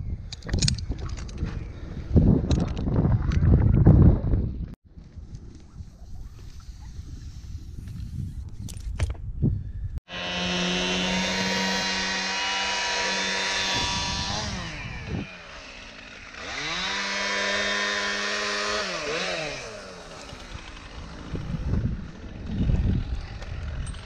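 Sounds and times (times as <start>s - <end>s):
chainsaw engine revving and idling: 10.1s - 24.0s.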